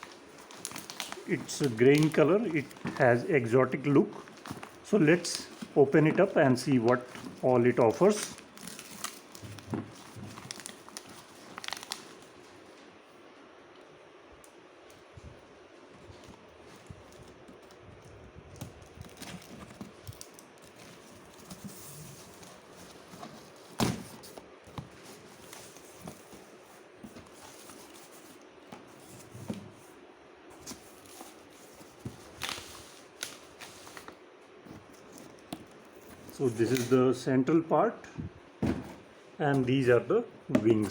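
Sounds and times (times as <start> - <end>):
cardboard rustling: 0.0 - 12.4, 18.8 - 30.0, 30.6 - 36.9, 38.6 - 39.8.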